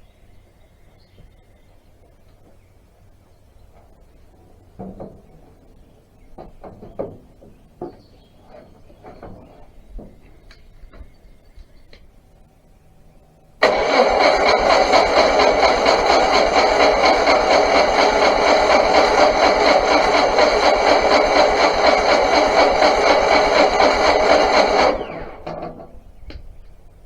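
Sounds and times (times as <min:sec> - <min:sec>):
engine cranking without firing: 0:13.6 - 0:26.2.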